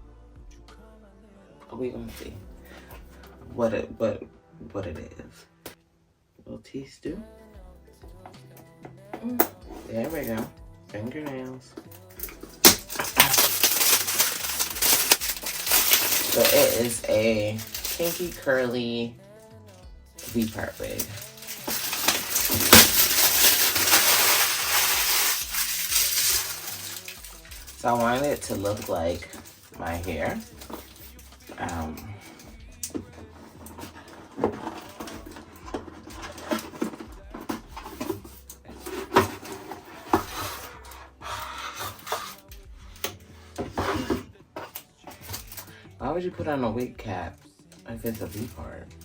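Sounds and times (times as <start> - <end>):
packaging rustling and crinkling: 12.1 - 18.8, 20.2 - 32.4, 33.2 - 40.7
sharp packaging crackle: 12.1 - 18.8, 20.2 - 31.7.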